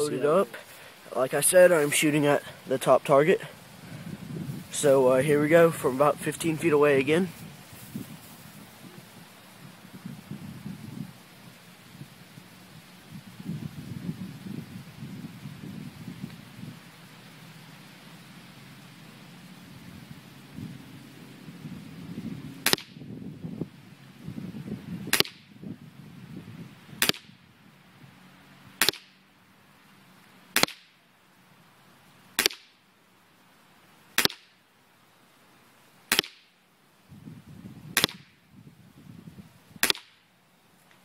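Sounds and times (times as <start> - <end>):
airsoft pistol shots: 22.6 - 23.0, 25.1 - 25.4, 27.0 - 27.3, 28.8 - 29.1, 30.6 - 30.9, 32.4 - 32.7, 34.2 - 34.5, 36.1 - 36.4, 38.0 - 38.3, 39.8 - 40.2.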